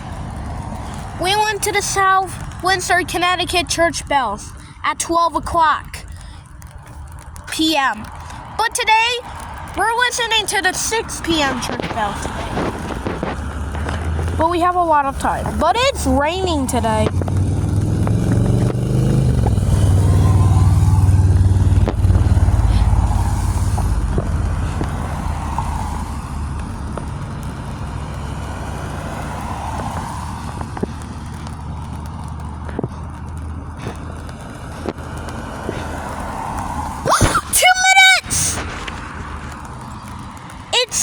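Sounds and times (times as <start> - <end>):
vehicle passing: 0.0 - 4.8, 5.8 - 41.0
rain hissing: 0.0 - 41.0
faint ticks: 6.0 - 8.6, 9.2 - 9.8, 21.8 - 36.9.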